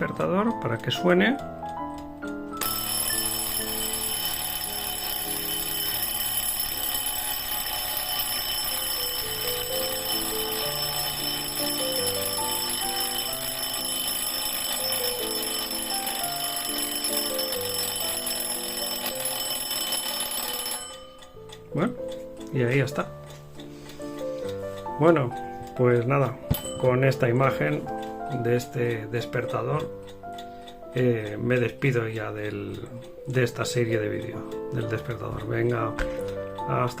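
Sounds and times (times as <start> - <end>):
background music: 0.0 - 37.0
mechanical alarm clock ringing: 0.0 - 37.0.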